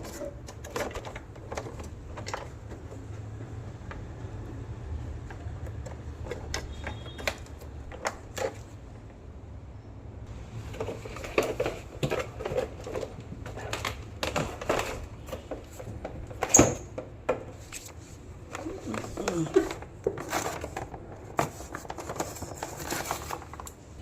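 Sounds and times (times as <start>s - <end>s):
small tools clicking and knocking: 5.2s - 8.7s.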